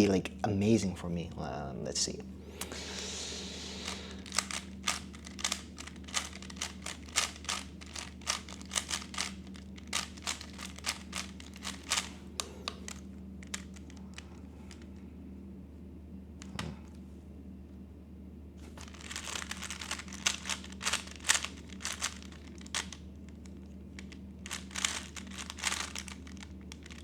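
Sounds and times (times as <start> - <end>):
plastic puzzle cube clicking: 4.2 - 12.1, 19.0 - 23.0, 24.0 - 27.0.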